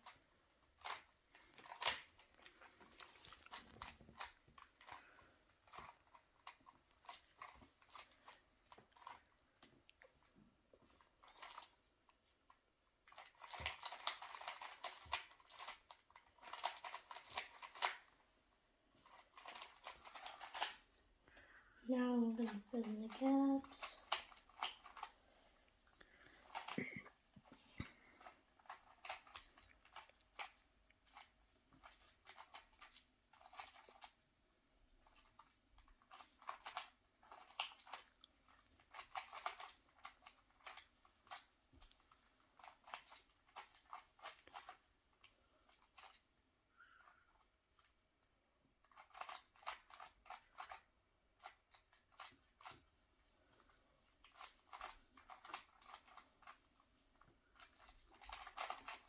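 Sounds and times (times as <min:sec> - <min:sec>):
puzzle cube plastic clicks: 0:00.0 - 0:09.3, 0:13.1 - 0:18.2, 0:19.0 - 0:20.9, 0:22.3 - 0:25.2, 0:26.0 - 0:34.2, 0:35.0 - 0:46.3, 0:48.8 - 0:52.8, 0:54.1 - 0:56.7, 0:57.5 - 0:59.0.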